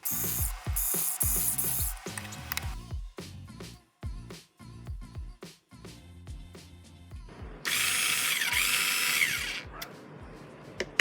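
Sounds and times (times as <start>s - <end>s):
cordless screwdriver motor whirring: 0.0s - 2.8s, 7.7s - 9.7s.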